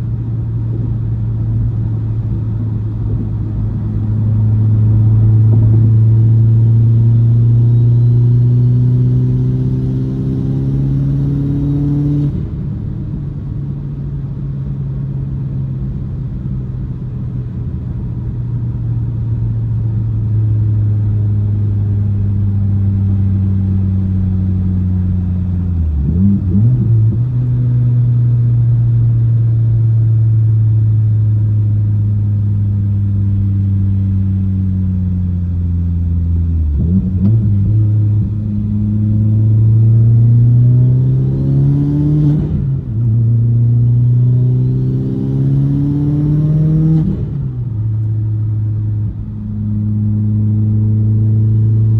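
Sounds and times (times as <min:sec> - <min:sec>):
car engine revving under load: 0:23.6 - 0:29.1, 0:34.2 - 0:51.9.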